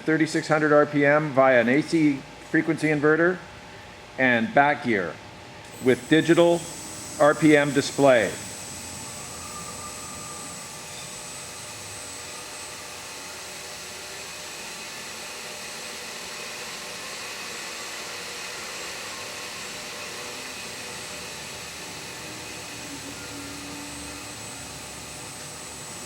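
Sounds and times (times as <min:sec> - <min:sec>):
faint steady whine: 0:00.0 - 0:14.4
milling machine motor hum: 0:05.5 - 0:26.0.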